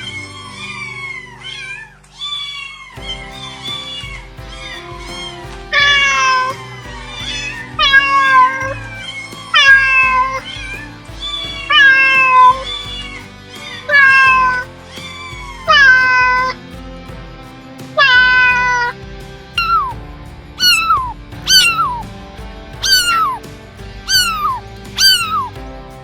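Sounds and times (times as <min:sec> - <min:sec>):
background music: 0:00.0 - 0:26.0
cat meowing: 0:03.9 - 0:13.2, 0:20.6 - 0:22.0, 0:22.8 - 0:23.4, 0:24.1 - 0:25.5.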